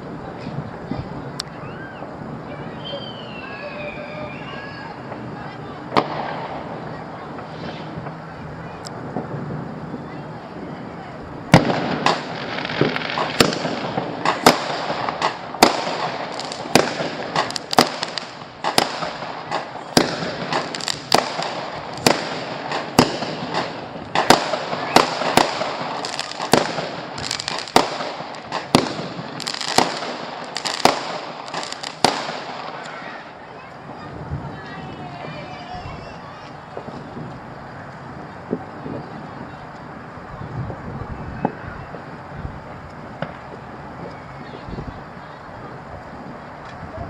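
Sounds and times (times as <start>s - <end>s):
fireworks bangs: 0.0s - 47.0s
fireworks crackle: 0.0s - 47.0s.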